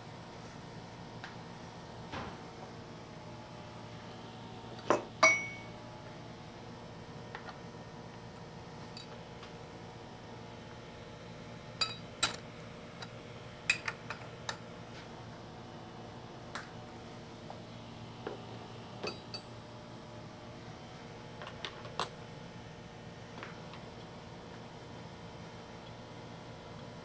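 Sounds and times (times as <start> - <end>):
steady low hum: 0.0 - 27.0
metallic clinks and taps: 4.9 - 5.7.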